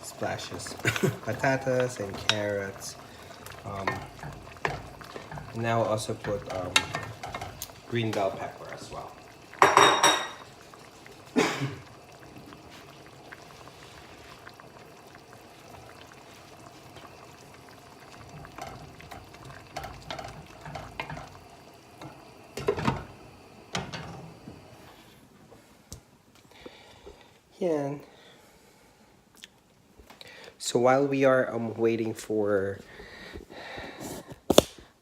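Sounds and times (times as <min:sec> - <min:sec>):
pot bubbling: 0:00.0 - 0:25.4
metal cookware clanking: 0:03.4 - 0:08.4, 0:09.6 - 0:10.5, 0:23.7 - 0:24.2.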